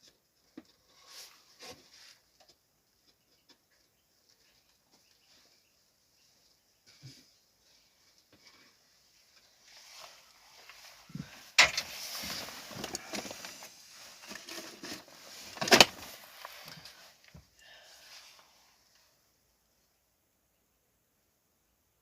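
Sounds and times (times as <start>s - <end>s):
rustling handling noise: 6.2s - 19.1s.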